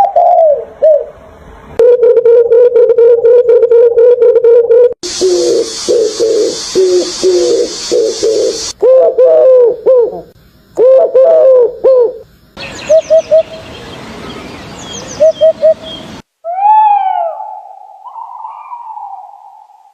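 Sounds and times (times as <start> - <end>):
high hiss: 5.0 - 8.8
low bird calls: 5.0 - 19.9.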